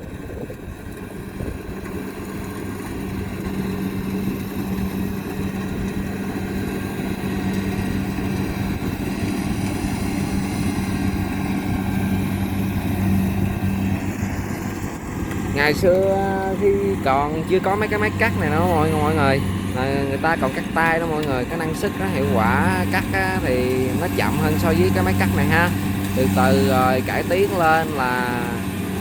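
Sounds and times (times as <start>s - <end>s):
harvester engine humming: 0.0s - 29.0s.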